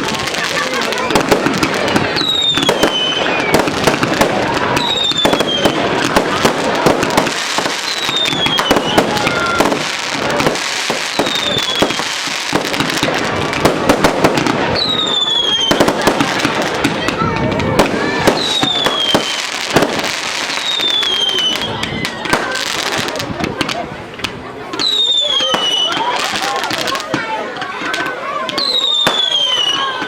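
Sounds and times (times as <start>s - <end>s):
fireworks cracking and banging: 0.0s - 30.0s
falling firework whistles: 1.1s - 6.4s, 7.0s - 12.8s, 14.6s - 16.3s, 17.8s - 22.6s, 24.8s - 26.7s, 28.6s - 30.0s.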